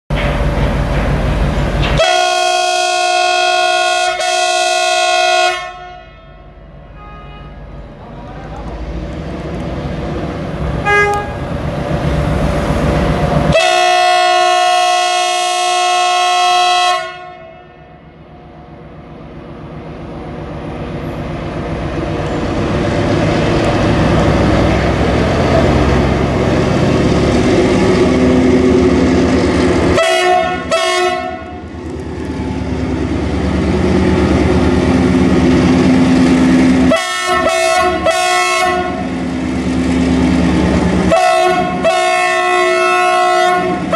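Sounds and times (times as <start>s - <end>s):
diesel locomotive engine: 0.1s - 43.9s
locomotive horn: 1.9s - 7.7s, 10.8s - 11.4s, 13.5s - 17.9s, 29.9s - 31.7s, 36.8s - 39.1s, 41.0s - 43.9s.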